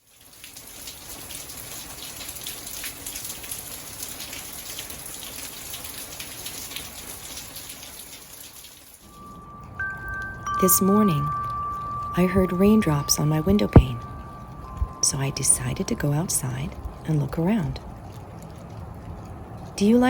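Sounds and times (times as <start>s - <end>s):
rain pattering: 0.0s - 20.0s.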